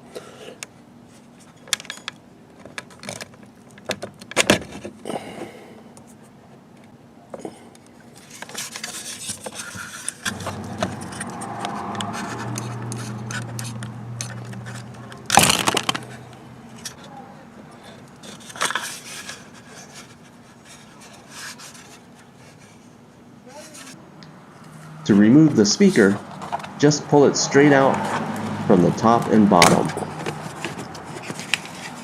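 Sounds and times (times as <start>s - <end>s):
plastic clicks and rattles: 12.0s - 16.2s.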